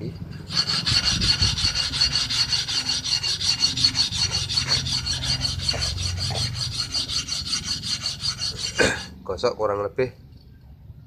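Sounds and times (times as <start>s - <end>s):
blade scraping on steel plate: 0.0s - 9.1s.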